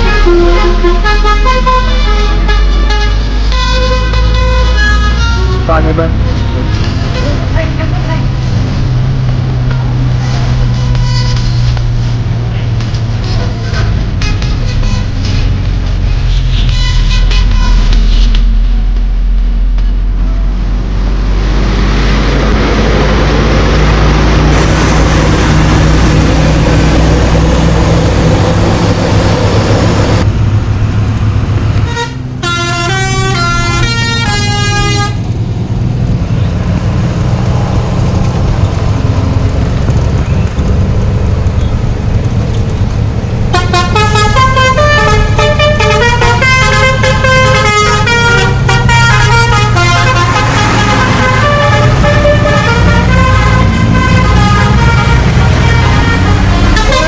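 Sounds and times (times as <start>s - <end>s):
bus musical horn tune: 0.0s - 7.8s, 10.6s - 11.7s, 13.1s - 18.3s, 24.5s - 30.2s, 31.8s - 35.3s, 43.5s - 57.0s
bus engine running: 0.0s - 57.0s
road noise: 0.0s - 57.0s.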